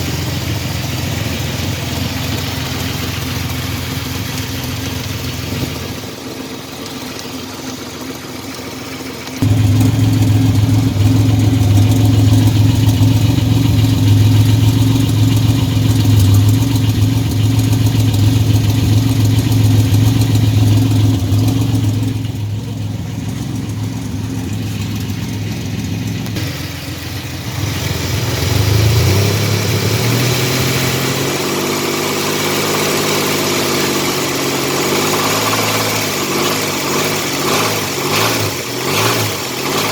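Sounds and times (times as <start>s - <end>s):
car engine idling: 0.0s - 39.9s
engine knocking: 0.0s - 39.9s
engine revving: 9.3s - 39.9s.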